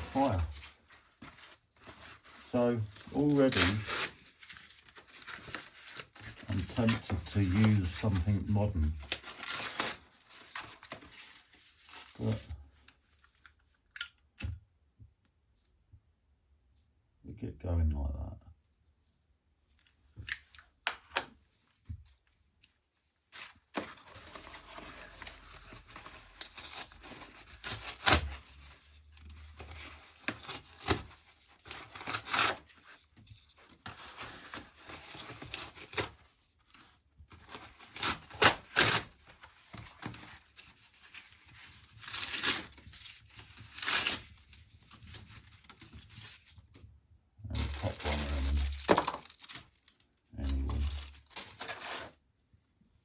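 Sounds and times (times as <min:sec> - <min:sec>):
paper tearing and crumpling: 0:00.0 - 0:12.4, 0:23.3 - 0:46.5, 0:47.5 - 0:52.2.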